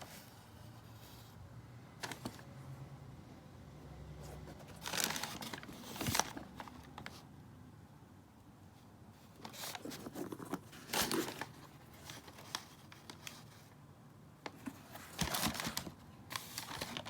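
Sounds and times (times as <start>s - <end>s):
paper packaging crinkling: 4.2s - 7.2s, 9.3s - 13.7s, 14.4s - 17.0s.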